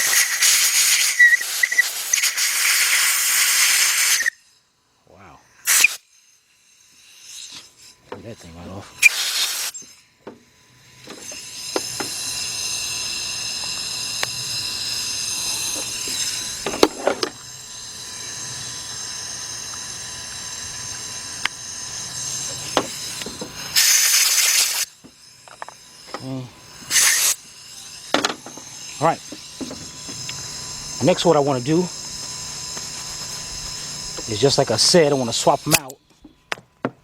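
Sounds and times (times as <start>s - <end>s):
air blow gun blasts: 0.0s - 4.4s, 5.6s - 6.1s, 9.0s - 9.9s, 22.5s - 24.9s, 26.8s - 27.5s
compressed air hissing with whistle: 0.0s - 10.1s, 11.0s - 36.1s.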